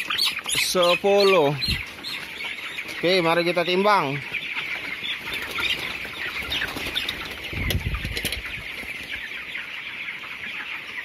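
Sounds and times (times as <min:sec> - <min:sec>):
chickens peeping: 0:00.0 - 0:11.0
wings flapping and scuffling: 0:04.3 - 0:09.4.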